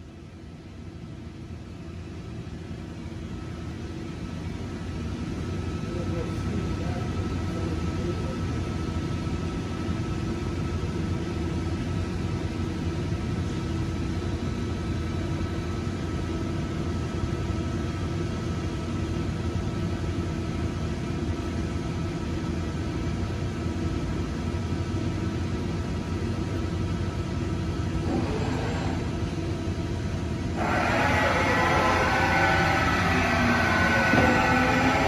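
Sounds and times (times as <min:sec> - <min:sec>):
machining center humming: 0:27.6 - 0:35.0
brief rushing sound: 0:30.6 - 0:35.0.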